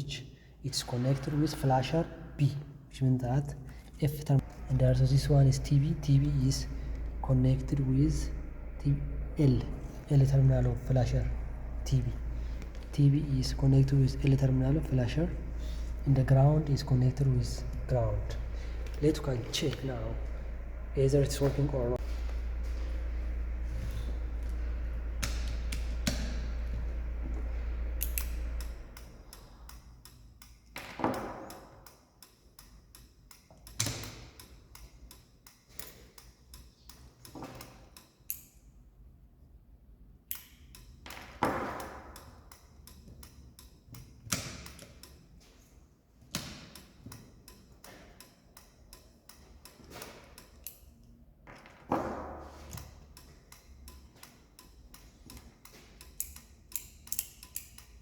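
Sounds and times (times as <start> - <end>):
low hum: 3.7 - 30.1
flasher relay clicking: 3.7 - 38.6, 40.2 - 58.0.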